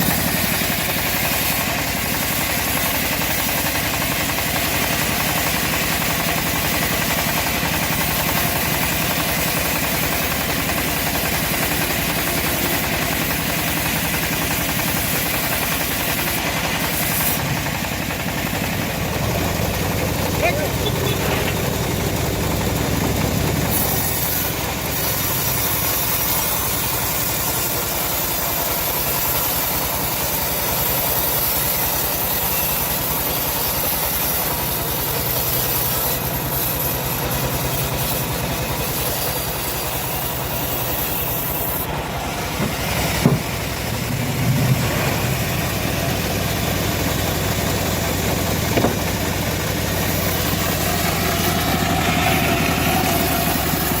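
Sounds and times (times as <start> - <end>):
bandsaw mill engine running: 0.0 - 54.0
short sharp knocks: 48.7 - 49.2.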